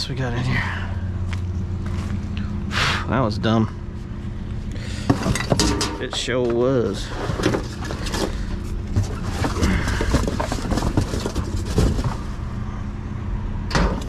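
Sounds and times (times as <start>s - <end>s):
vehicle engine running: 0.0s - 13.8s
debris shifted in a dumpster: 4.8s - 12.7s.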